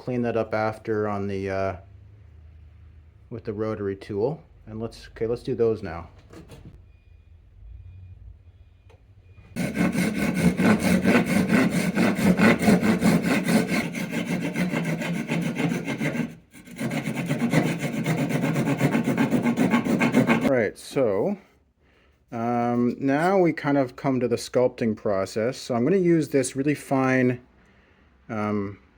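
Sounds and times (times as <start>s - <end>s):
rotary tool grinding wood: 9.6s - 20.5s.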